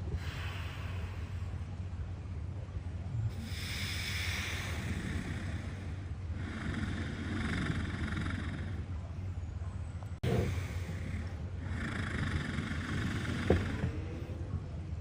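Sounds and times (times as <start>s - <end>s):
walrus snoring: 3.2s - 9.0s, 10.2s - 14.4s
walrus snort: 3.3s - 8.9s, 10.2s - 14.3s.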